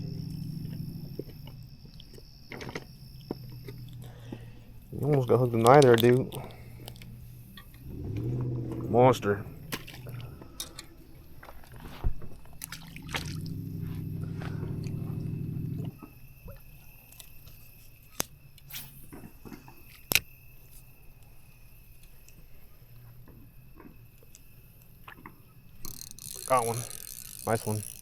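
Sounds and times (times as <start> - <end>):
low hum: 0.0 - 16.6
water splashing and dripping: 8.7 - 15.0.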